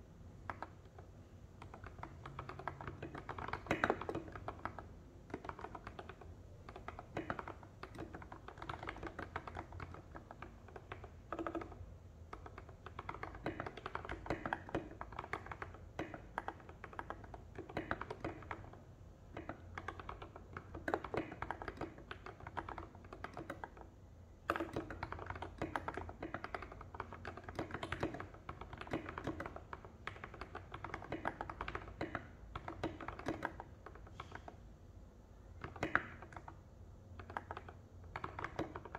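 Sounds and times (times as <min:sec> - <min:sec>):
mechanical keyboard typing: 0:00.4 - 0:34.6, 0:35.5 - 0:38.9.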